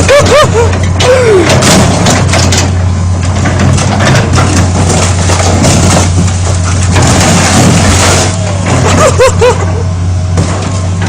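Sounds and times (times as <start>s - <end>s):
excavator diesel engine: 0.0s - 11.0s
car body crunching: 3.3s - 9.3s.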